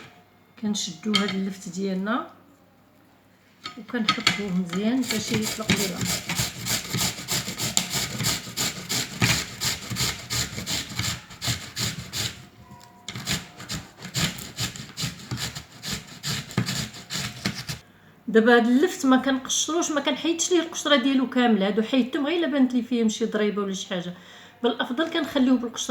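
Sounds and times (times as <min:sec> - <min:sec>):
turnip grating on grater: 0:04.5 - 0:17.8.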